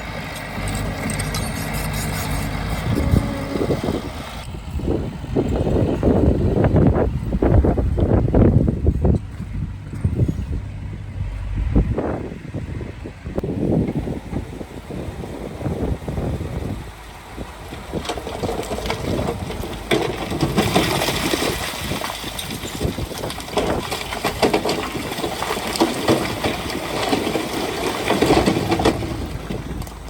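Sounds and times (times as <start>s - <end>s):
machinery clanks and crunching: 0.0s - 5.6s, 17.3s - 30.0s
diesel engine running: 0.0s - 21.0s
wind on microphone: 0.6s - 19.6s, 20.6s - 24.0s.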